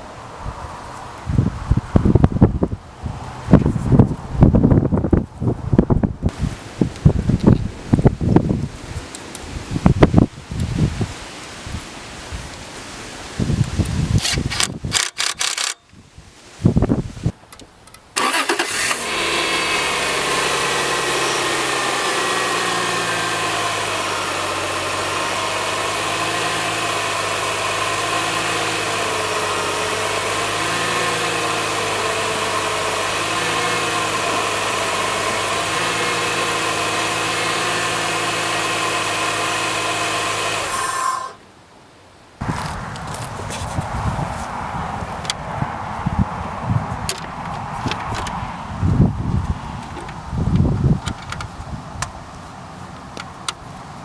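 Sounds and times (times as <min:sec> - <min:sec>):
car engine starting and idling: 0:18.1 - 0:41.4.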